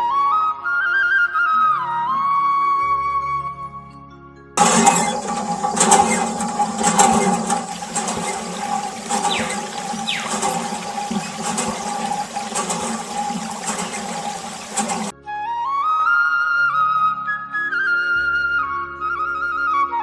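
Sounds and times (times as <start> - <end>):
steady hum: 4.6 - 15.1
water gushing from pump: 4.6 - 15.1.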